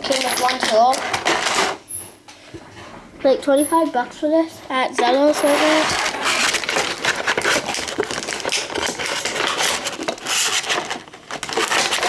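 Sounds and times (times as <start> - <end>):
packaging crinkling and clicking: 0.0 - 1.8, 5.3 - 12.0.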